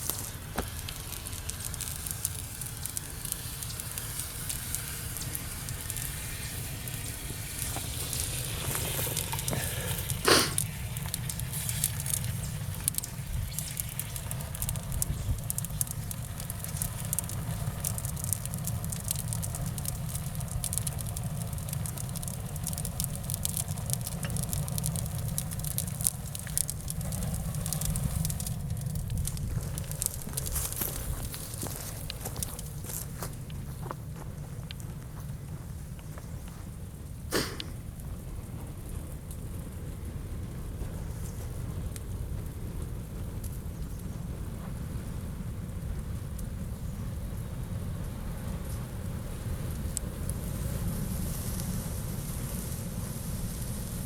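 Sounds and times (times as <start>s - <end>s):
crackling sizzling noise: 0.0s - 54.0s
sharp crack: 6.9s - 33.0s, 37.3s - 37.8s.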